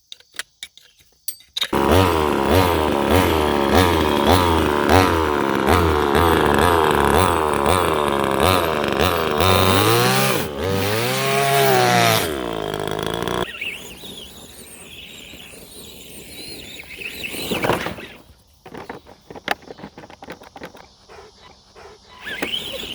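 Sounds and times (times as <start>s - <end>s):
chainsaw engine revving: 1.7s - 15.5s, 20.6s - 22.9s
handling noises: 17.5s - 21.6s.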